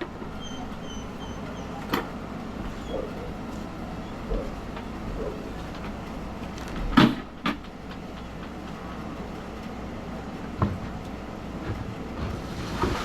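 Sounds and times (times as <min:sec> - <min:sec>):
steady background noise: 0:00.0 - 0:13.0
sharp knocks and clatters: 0:06.6 - 0:08.8.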